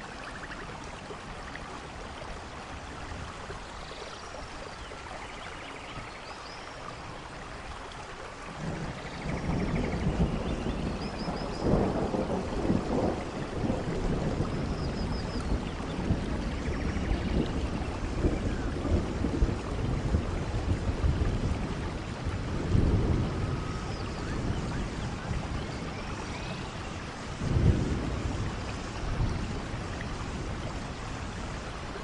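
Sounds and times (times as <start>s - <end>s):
steady rain falling: 0.0s - 32.0s
thunder rolling: 8.6s - 31.6s
faint bird chirps: 23.4s - 27.0s.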